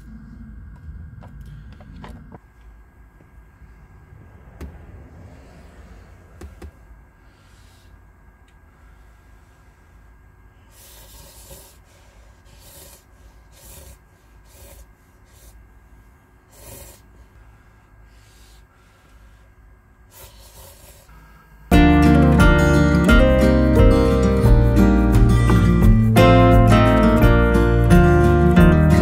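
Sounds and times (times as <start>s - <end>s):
acoustic guitar music: 21.7s - 29.0s.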